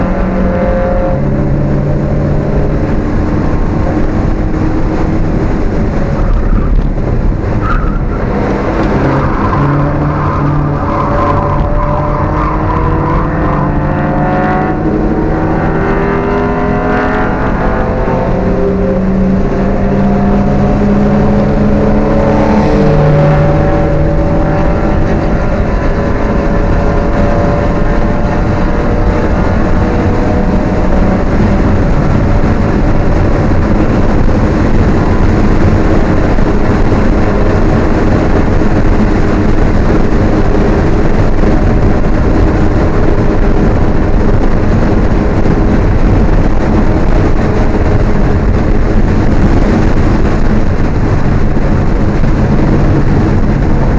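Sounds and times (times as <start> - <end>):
car engine at speed: 0.0 - 53.9
road noise: 0.0 - 53.9
wind noise: 0.0 - 53.9.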